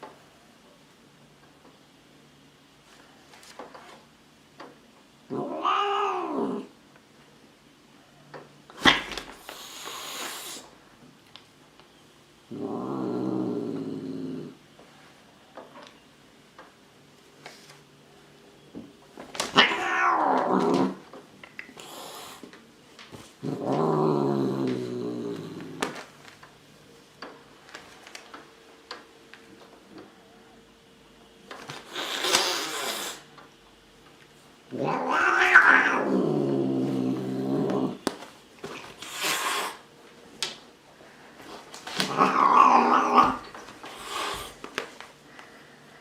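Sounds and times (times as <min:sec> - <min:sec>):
cat growling and yowling: 0:05.3 - 0:06.7, 0:12.5 - 0:14.6, 0:19.5 - 0:21.0, 0:23.4 - 0:25.8, 0:34.7 - 0:38.0, 0:42.0 - 0:44.5
angry cat yowling: 0:05.4 - 0:06.7, 0:19.6 - 0:21.0, 0:34.8 - 0:36.6, 0:42.0 - 0:43.5.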